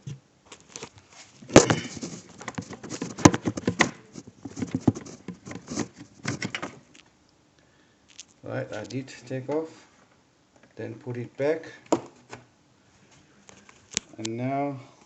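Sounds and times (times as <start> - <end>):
handling clicks and knocks: 0.0 - 7.1.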